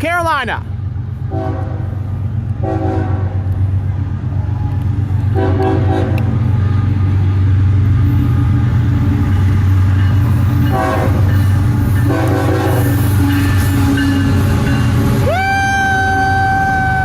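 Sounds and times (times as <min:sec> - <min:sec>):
freight train rumbling past: 0:00.0 - 0:17.0
locomotive horn blasts: 0:01.3 - 0:03.4, 0:05.3 - 0:07.2, 0:10.7 - 0:11.3, 0:12.1 - 0:13.0.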